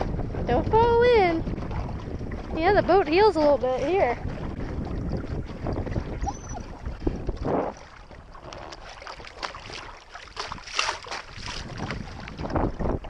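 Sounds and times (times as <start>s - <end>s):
water splashing against hull: 0.0s - 13.0s
wind noise on microphone: 0.0s - 13.0s.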